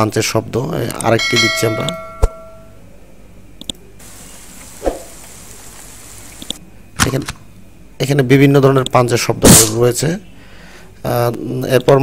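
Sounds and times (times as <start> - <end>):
punch sound effect with hiss: 4.8 - 5.2.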